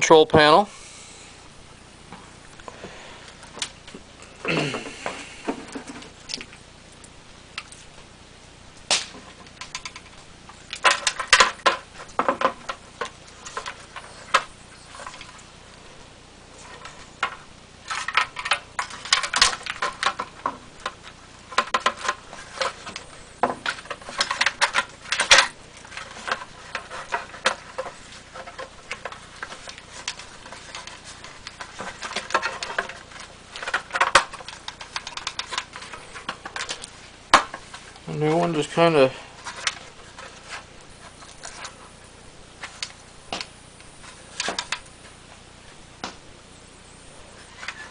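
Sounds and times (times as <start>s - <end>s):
plastic and metal parts rattling: 9.2s - 15.4s, 16.6s - 41.8s.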